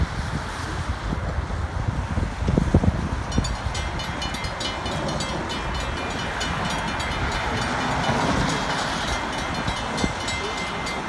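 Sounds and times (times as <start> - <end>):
train wheels rumbling on rail: 1.2 - 11.0
thin high tone: 3.4 - 11.0.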